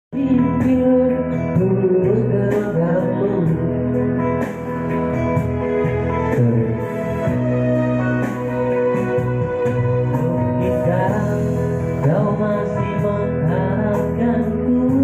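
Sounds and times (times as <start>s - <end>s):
instrumental music: 0.1s - 15.0s.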